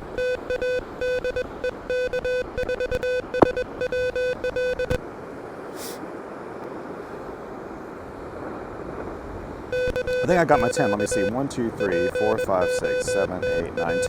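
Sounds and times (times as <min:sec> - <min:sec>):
morse code tones: 0:00.0 - 0:05.0, 0:09.7 - 0:14.0.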